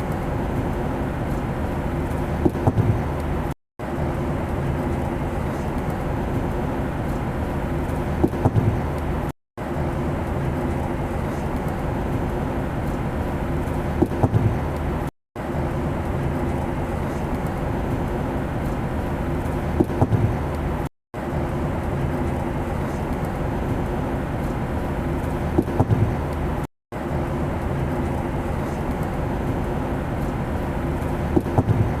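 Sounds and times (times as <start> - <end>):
airplane engine drone: 0.0 - 32.0.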